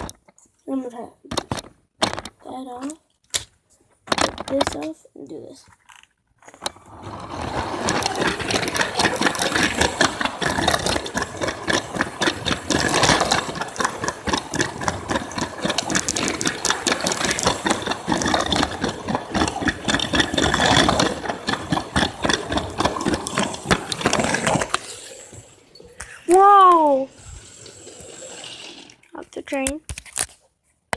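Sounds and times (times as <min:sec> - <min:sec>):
toy train motor whir: 0:06.7 - 0:25.2, 0:26.3 - 0:29.0
wheels clattering on track: 0:06.7 - 0:25.6.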